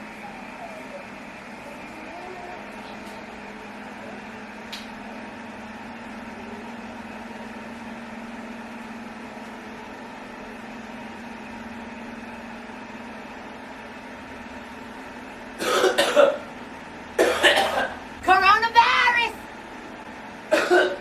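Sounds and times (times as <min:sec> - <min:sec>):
appliance hum with hiss: 0:00.0 - 0:21.0
person coughing: 0:15.6 - 0:16.4, 0:17.2 - 0:18.0, 0:20.5 - 0:21.0.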